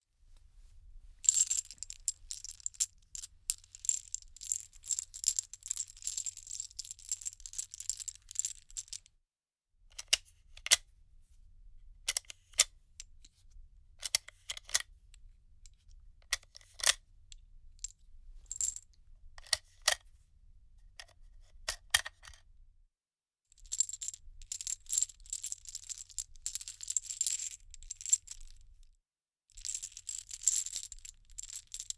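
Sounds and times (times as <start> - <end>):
metal cartridges clinking: 1.3 - 6.7.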